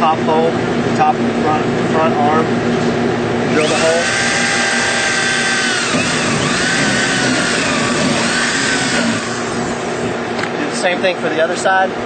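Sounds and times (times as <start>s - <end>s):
steady machine hum: 0.0s - 12.0s
power drill drilling: 3.6s - 10.0s.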